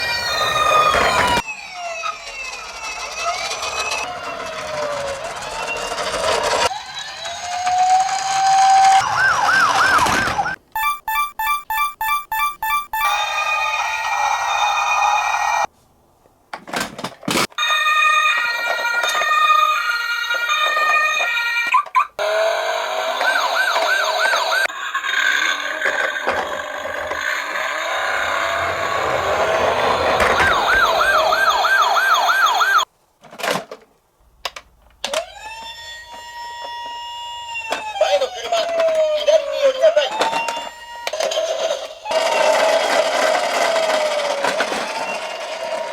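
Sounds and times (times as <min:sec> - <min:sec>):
toy police siren: 0:00.0 - 0:15.7, 0:17.6 - 0:32.9, 0:35.0 - 0:45.9.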